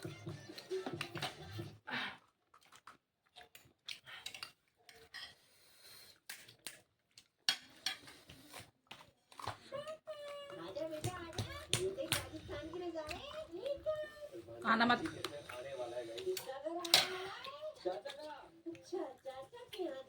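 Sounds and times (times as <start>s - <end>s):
dishes and cutlery clattering: 7.5s - 8.3s, 16.3s - 17.3s.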